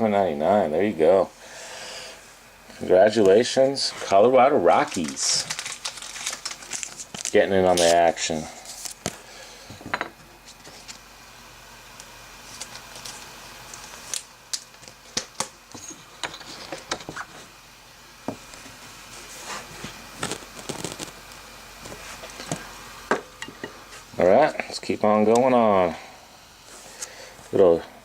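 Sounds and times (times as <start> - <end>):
trading cards handled: 4.7 - 9.2.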